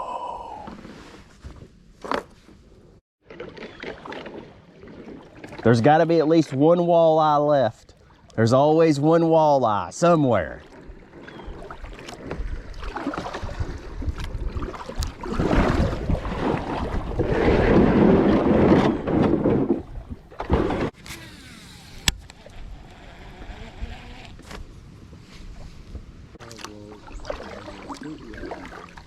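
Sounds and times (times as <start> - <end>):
creek water splashing: 3.2 - 18.2, 26.4 - 29.0.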